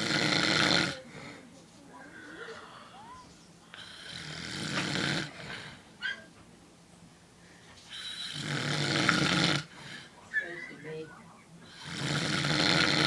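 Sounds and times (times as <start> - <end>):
man snoring: 0.0 - 1.0, 3.8 - 5.4, 8.0 - 9.7, 11.7 - 13.0.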